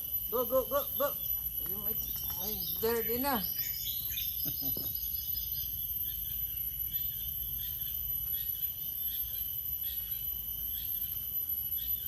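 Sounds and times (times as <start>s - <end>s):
high insect drone: 0.0s - 12.0s.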